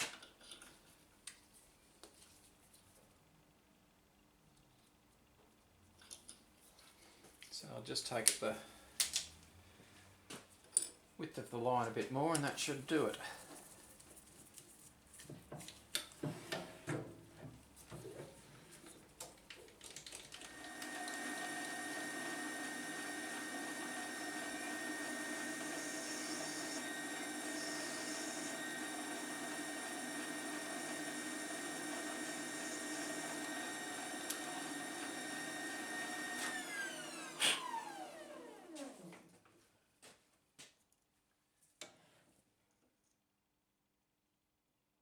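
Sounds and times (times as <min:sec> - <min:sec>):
metal lathe whining: 0:20.5 - 0:38.8.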